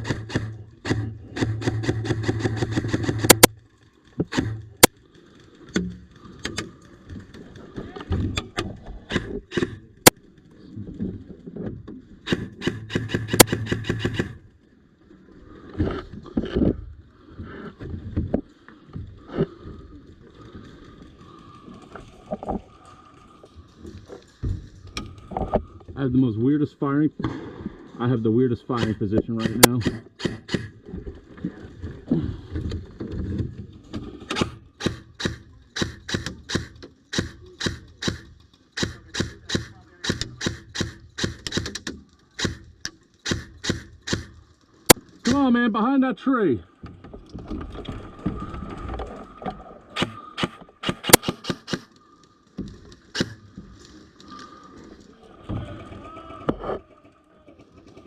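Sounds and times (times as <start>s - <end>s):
airsoft rifle shots: 0.0s - 3.5s, 4.3s - 4.9s, 12.3s - 14.4s, 28.8s - 30.8s, 34.3s - 41.8s, 42.4s - 44.4s, 50.0s - 51.9s, 53.1s - 53.4s
full-auto airsoft burst: 0.0s - 3.5s, 12.3s - 14.4s, 28.8s - 30.8s, 34.3s - 38.2s, 38.8s - 41.8s, 42.4s - 44.4s, 50.0s - 51.9s, 53.1s - 53.4s.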